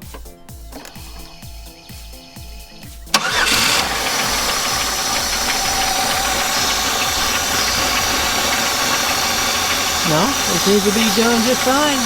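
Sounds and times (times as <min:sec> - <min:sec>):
background music: 0:00.0 - 0:12.0
car engine running loudly: 0:03.1 - 0:12.0
starter click: 0:03.2 - 0:12.0.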